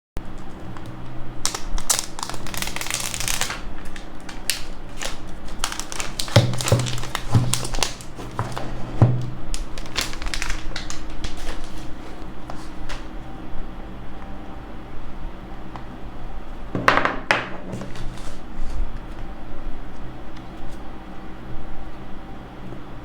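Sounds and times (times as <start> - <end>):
paper packaging crinkling: 1.4 - 13.1, 17.8 - 19.3
dull knocks: 6.4 - 9.4.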